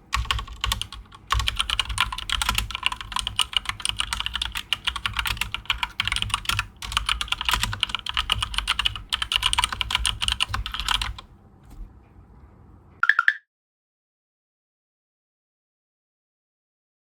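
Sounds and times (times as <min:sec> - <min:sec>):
fast typing on mechanical keyboard: 0:00.0 - 0:11.3.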